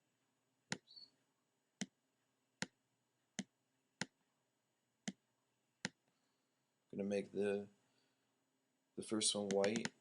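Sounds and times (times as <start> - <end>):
computer mouse clicks: 9.4 - 10.0.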